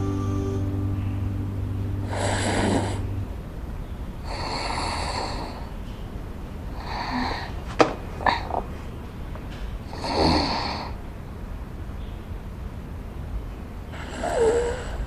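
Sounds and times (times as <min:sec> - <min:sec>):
woman snoring: 0:02.0 - 0:03.0, 0:04.3 - 0:05.7, 0:06.8 - 0:07.6, 0:09.9 - 0:11.0, 0:14.0 - 0:15.0.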